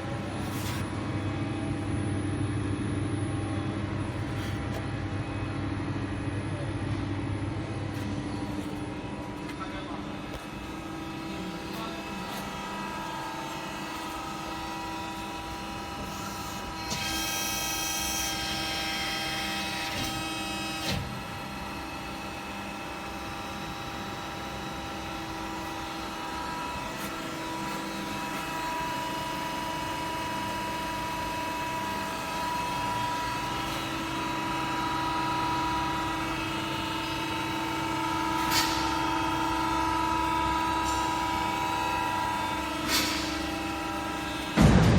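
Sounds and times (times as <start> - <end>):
press brake hum and whine: 0.0 - 44.9.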